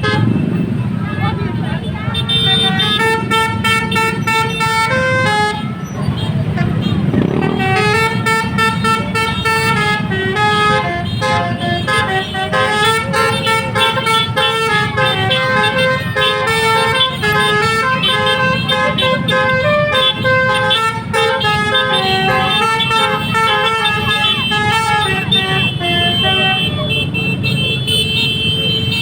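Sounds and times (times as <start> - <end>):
multi-tone bus horn melody: 0.0 - 29.0.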